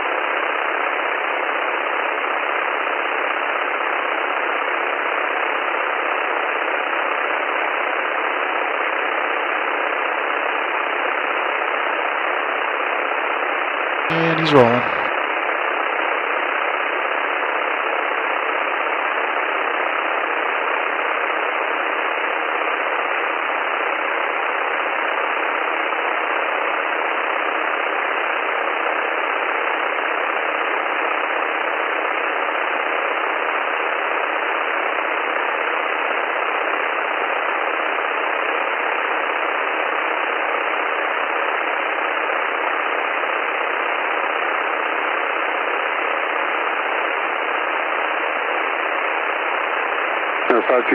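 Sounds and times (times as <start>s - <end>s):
headset intercom hiss: 14.1s - 15.1s, 50.5s - 50.9s
aircraft engine idling through headset: 50.5s - 50.9s.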